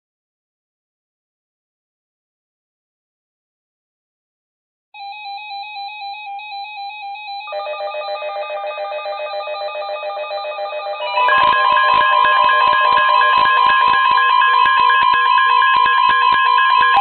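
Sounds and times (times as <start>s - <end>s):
loud steady warning tone: 5.0s - 17.0s
lower warbling alarm: 5.0s - 17.0s
pulsing beeps: 6.6s - 17.0s
warbling electronic alert tone: 7.4s - 17.0s.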